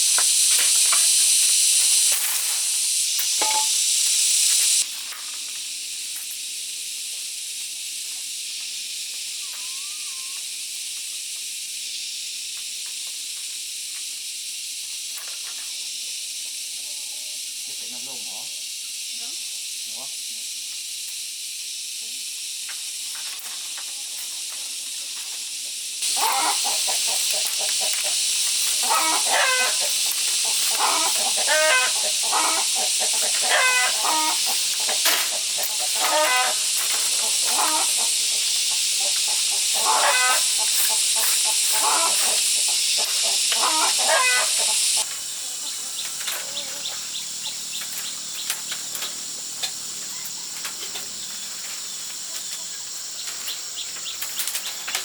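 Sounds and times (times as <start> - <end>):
steady high hiss: 0.0 - 55.0
poultry clucking: 26.0 - 55.0.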